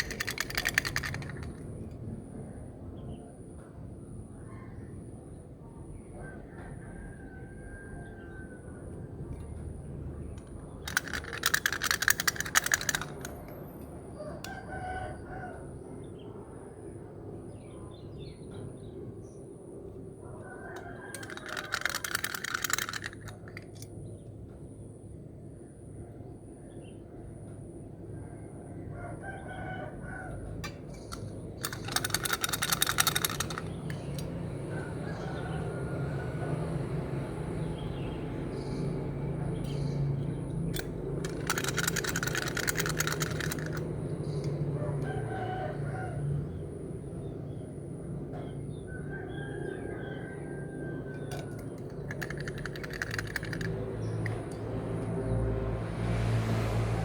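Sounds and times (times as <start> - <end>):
beads rattling into plastic bucket: 0.0 - 1.6, 10.9 - 13.5, 21.2 - 23.8, 31.1 - 33.8, 41.2 - 43.8, 51.9 - 53.7
outdoor morning ambience: 0.0 - 57.0
distant rooster crowing: 6.1 - 9.1, 14.0 - 16.2, 20.0 - 23.6, 28.2 - 55.5
rooster crowing: 14.2 - 15.8, 28.9 - 30.7, 34.6 - 37.0, 44.8 - 46.6, 48.9 - 54.4.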